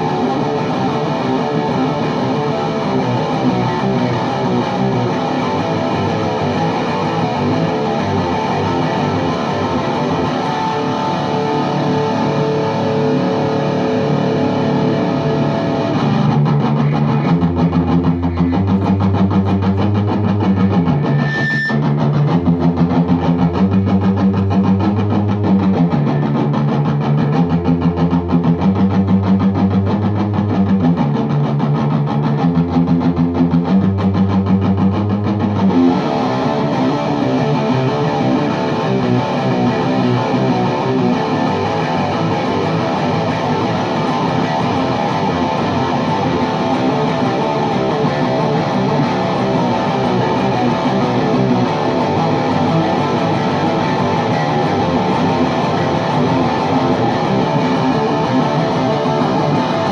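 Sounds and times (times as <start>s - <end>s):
distorted electric guitar: 0.0s - 59.9s
guitar high squeal: 20.5s - 22.2s.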